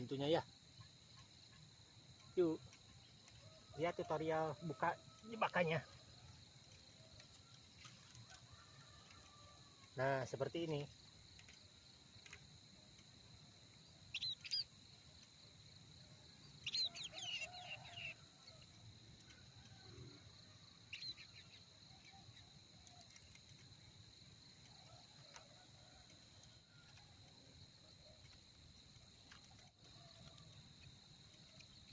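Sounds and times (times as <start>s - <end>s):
birds chirping: 16.6s - 18.2s.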